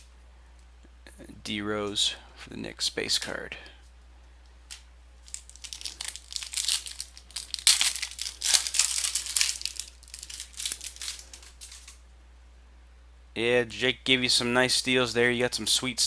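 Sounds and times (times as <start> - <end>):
foil wrapper crinkling and tearing: 4.7 - 12.0.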